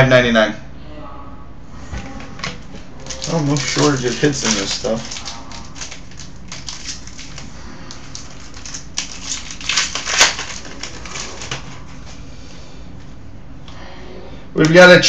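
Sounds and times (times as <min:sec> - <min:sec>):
cards being handled: 0:02.1 - 0:12.2
card pack wrapper crinkling: 0:02.7 - 0:12.0.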